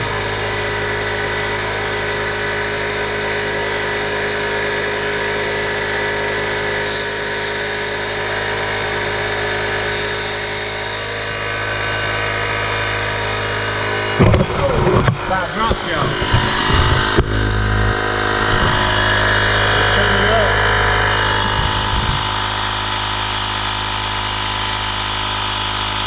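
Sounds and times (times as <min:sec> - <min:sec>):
air compressor motor humming: 0:00.0 - 0:26.0
brief air hisses: 0:09.8 - 0:11.4.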